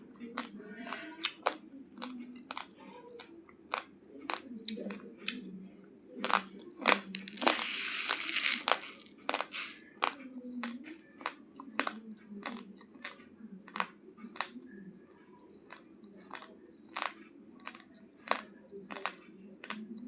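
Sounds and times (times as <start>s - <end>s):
rice grains crunching in chewing: 7.1s - 9.8s.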